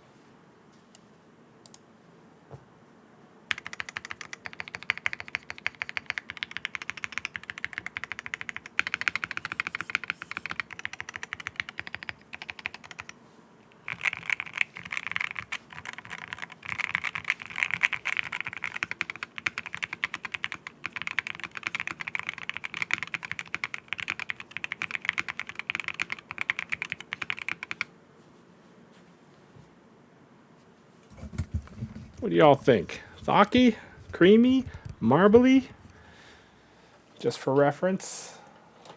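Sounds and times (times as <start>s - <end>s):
fast typing on mechanical keyboard: 3.5s - 13.2s, 13.8s - 27.9s, 31.1s - 36.0s.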